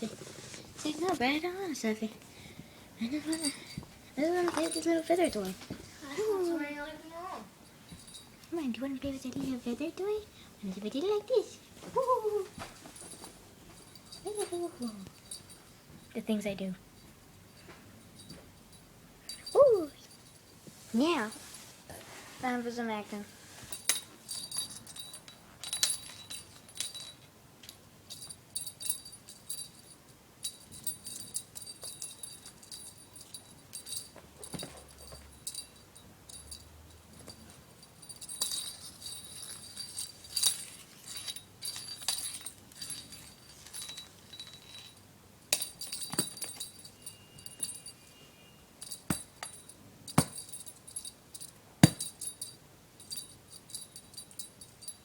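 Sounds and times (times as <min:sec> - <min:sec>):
small bell jingling: 0:03.0 - 0:10.3, 0:12.2 - 0:21.6, 0:23.7 - 0:55.0.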